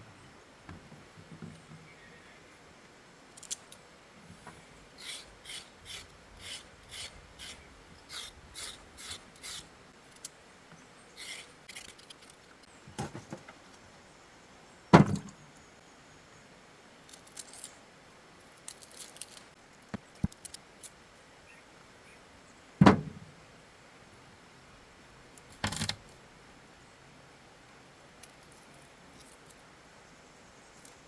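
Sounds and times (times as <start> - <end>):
dull thumps: 22.8 - 23.3.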